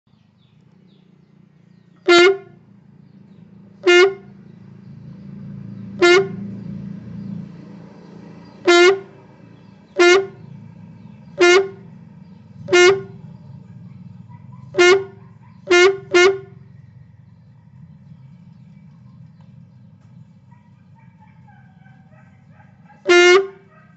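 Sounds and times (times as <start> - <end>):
short horn-like honks: 2.1 - 2.6, 3.8 - 4.4, 6.0 - 6.6, 8.7 - 9.2, 10.0 - 10.6, 11.4 - 12.0, 12.7 - 13.3, 14.8 - 16.7, 23.0 - 23.7.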